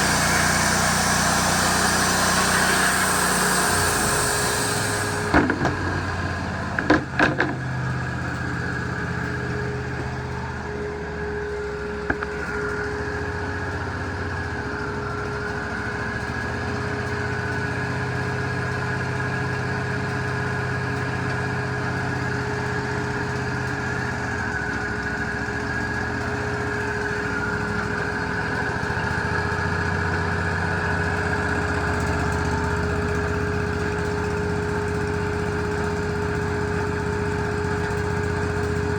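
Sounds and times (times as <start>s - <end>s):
band sawmill running: 0.0s - 38.9s
sharp knocks: 5.3s - 6.2s, 6.8s - 7.7s.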